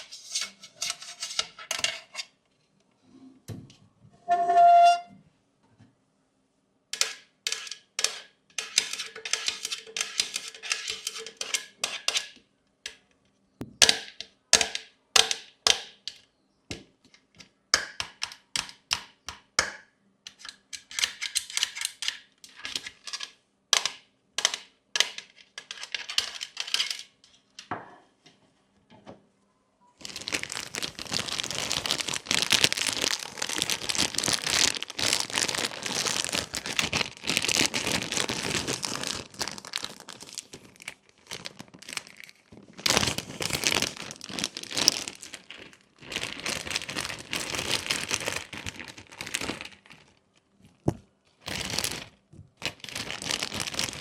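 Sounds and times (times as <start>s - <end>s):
plastic toys clicking: 20.3s - 27.2s
plastic crinkling: 30.0s - 54.0s.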